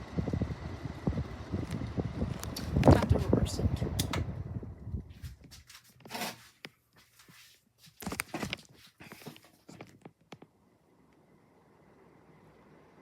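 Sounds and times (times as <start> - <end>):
clicks and scrapes of handling: 5.6 - 7.3.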